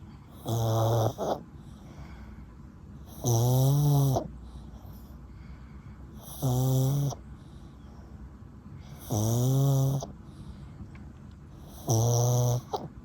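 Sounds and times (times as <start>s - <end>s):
dog snoring: 0.3s - 2.0s, 3.0s - 5.1s, 6.1s - 7.2s, 8.8s - 10.2s, 11.6s - 13.0s.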